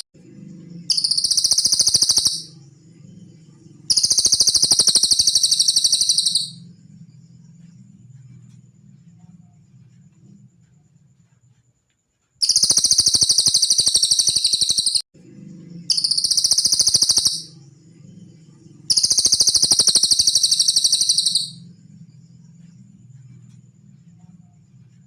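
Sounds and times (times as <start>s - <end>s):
faint low hum: 0.0s - 14.1s, 15.2s - 25.0s
songbird high-pitched trill: 0.6s - 6.8s, 12.4s - 15.0s, 15.8s - 21.9s.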